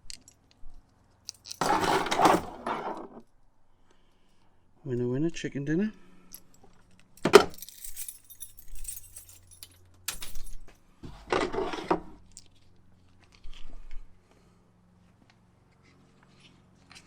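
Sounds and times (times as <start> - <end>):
metal parts clinking and rattling: 1.3 - 3.0, 6.3 - 12.4.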